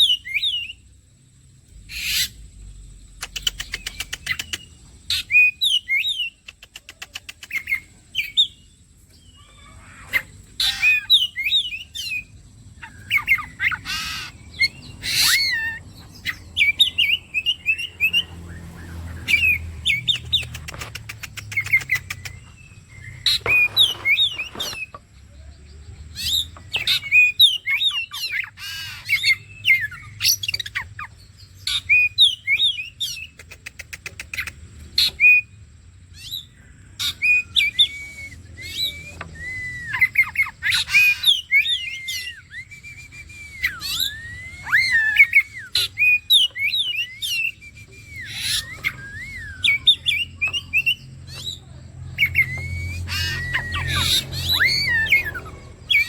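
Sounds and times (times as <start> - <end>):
bird singing whistled phrases: 10.1 - 20.6, 36.2 - 56.0.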